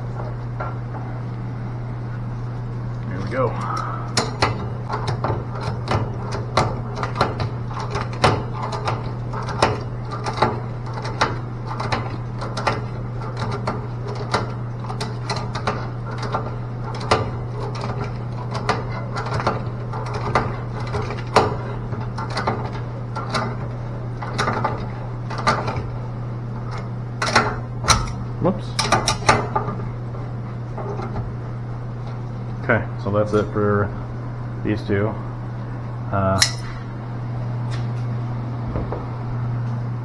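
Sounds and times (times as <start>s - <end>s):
steady low hum: 0.0s - 40.0s
hand tools clicking and knocking: 36.4s - 36.8s.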